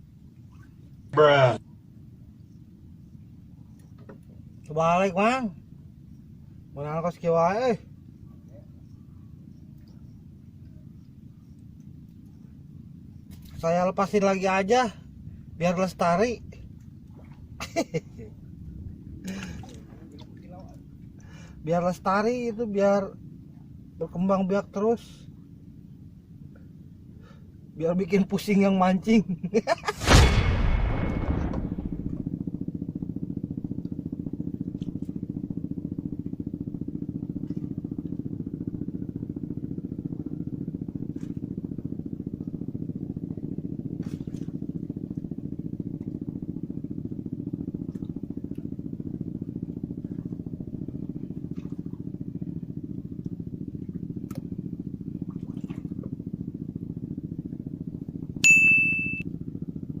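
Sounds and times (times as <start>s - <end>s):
distant motor drone: 0.0s - 60.0s
short high tone: 58.4s - 59.2s.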